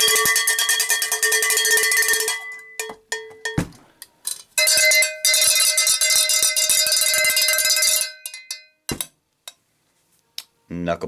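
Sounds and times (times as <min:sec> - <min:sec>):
low thud: 0:03.6 - 0:03.9.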